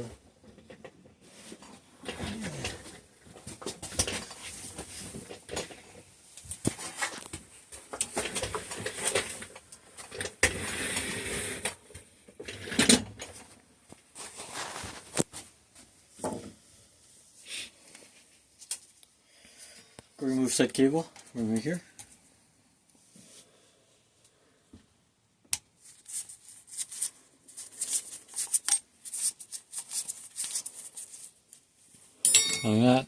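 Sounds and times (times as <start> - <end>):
scraping rustle: 14.1 - 15.4
metal tool clicks and knocks: 32.2 - 32.8.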